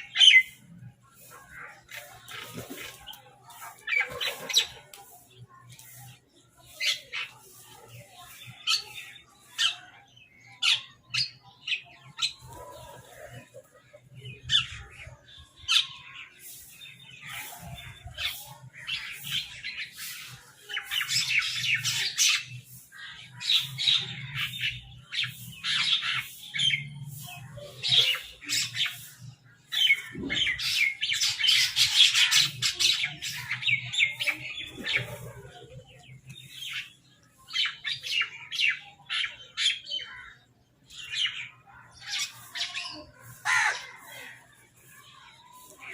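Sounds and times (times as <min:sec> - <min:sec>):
crows squawking and chattering: 0:41.9 - 0:44.5.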